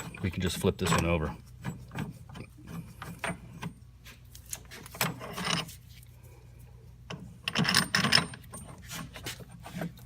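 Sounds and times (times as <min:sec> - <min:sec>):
metal scraping and clinking: 0:04.4 - 0:06.0.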